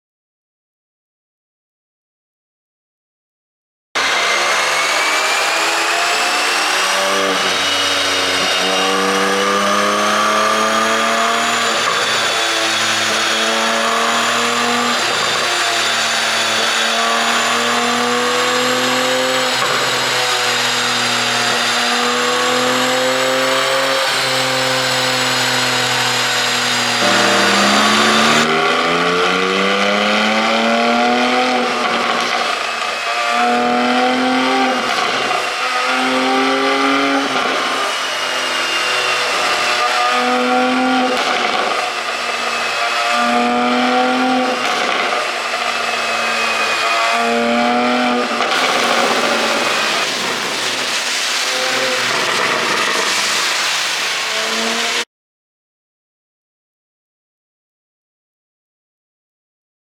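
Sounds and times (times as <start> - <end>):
car engine accelerating: 26.6 - 31.5.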